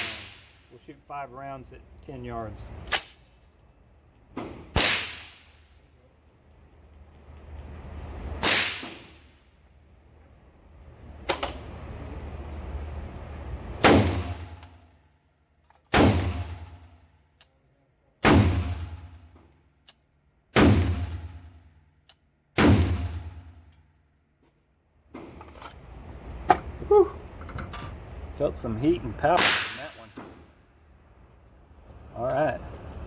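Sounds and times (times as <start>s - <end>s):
quieter sharp crack: 4.4s - 5.6s, 8.4s - 9.3s, 29.3s - 30.2s
rifle shots: 4.7s - 5.5s, 8.4s - 9.2s, 15.9s - 16.7s, 18.2s - 19.0s, 20.6s - 21.4s, 22.6s - 23.4s, 29.4s - 30.0s.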